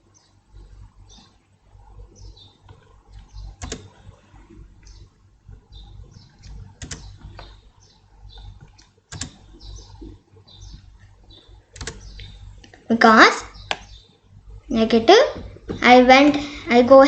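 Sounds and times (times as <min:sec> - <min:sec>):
low electrical hum: 0:00.0 - 0:17.0
computer mouse clicking: 0:02.6 - 0:04.2, 0:06.4 - 0:07.6, 0:08.3 - 0:09.7, 0:11.8 - 0:12.8.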